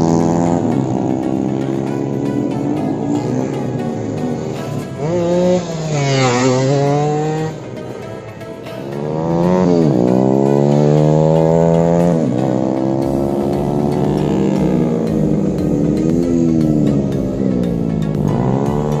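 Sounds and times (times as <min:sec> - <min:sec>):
motorcycle engine revving: 0:00.0 - 0:19.0.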